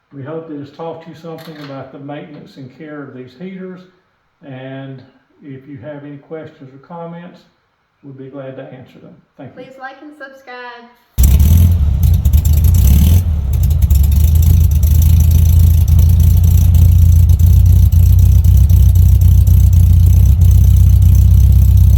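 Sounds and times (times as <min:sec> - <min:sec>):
engine running: 0:11.2 - 0:21.9.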